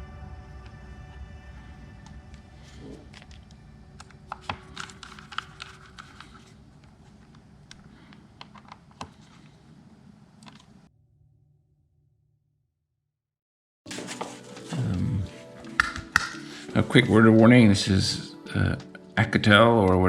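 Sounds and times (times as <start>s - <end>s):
low hum: 0.0s - 8.4s
metal parts being handled: 4.1s - 6.6s, 13.9s - 14.8s.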